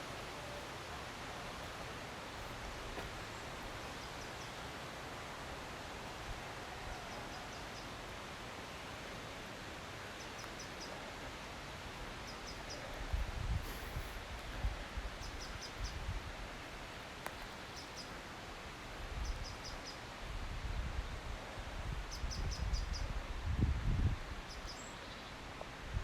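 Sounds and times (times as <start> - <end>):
steady outdoor hiss: 0.0 - 26.0
songbird calling: 12.2 - 14.2, 15.2 - 16.1, 17.2 - 18.2.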